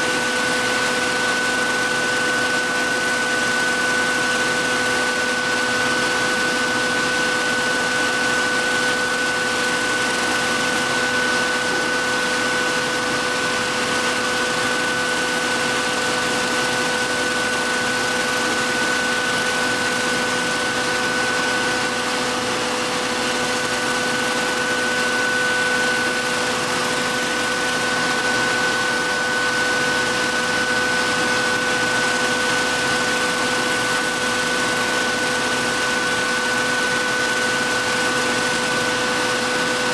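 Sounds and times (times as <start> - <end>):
belt sharpener motor hum: 7.8 - 33.5.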